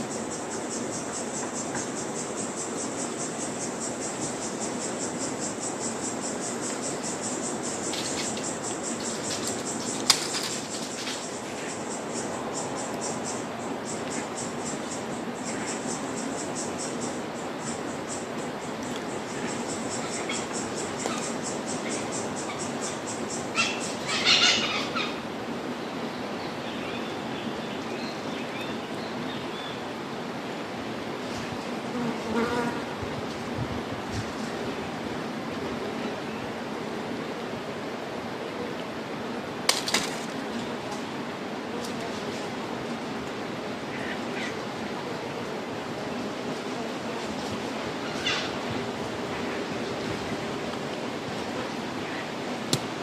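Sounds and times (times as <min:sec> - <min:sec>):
insect chirping: 0:00.0 - 0:30.7
background hiss: 0:00.0 - 0:53.0
outdoor background noise: 0:00.0 - 0:53.0.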